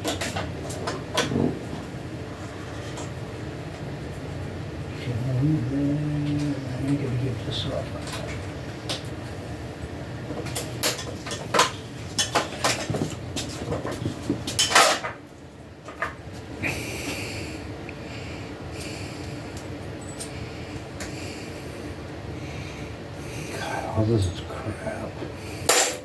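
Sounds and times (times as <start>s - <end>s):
metal tools clinking and knocking: 20.0s - 20.4s.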